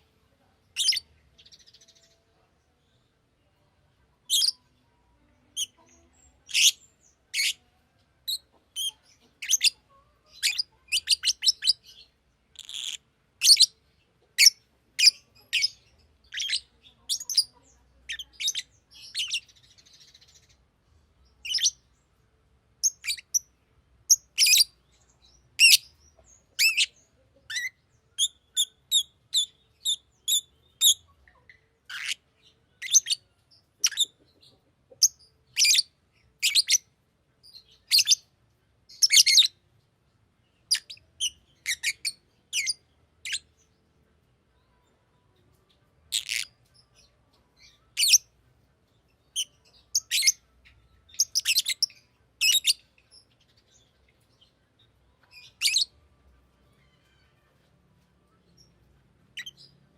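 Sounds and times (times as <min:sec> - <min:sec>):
lovebird chirping: 0:00.7 - 0:02.3, 0:05.5 - 0:07.6, 0:08.2 - 0:13.8, 0:14.4 - 0:20.6, 0:21.3 - 0:21.8, 0:22.8 - 0:23.5, 0:24.1 - 0:38.2, 0:38.9 - 0:39.6, 0:40.5 - 0:43.7, 0:46.0 - 0:48.3, 0:49.1 - 0:56.0, 0:58.4 - 0:59.9.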